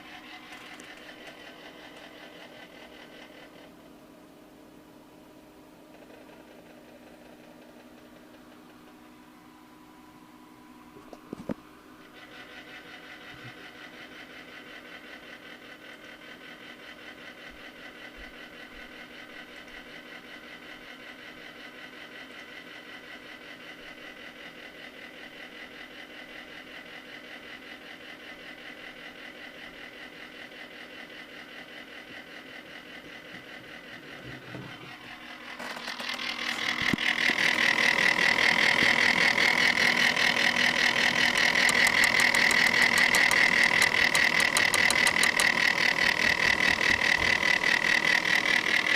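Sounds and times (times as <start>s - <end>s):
cooler pump humming: 0.0s - 3.8s, 34.3s - 48.9s
high-pitched grinding noise: 35.5s - 48.9s.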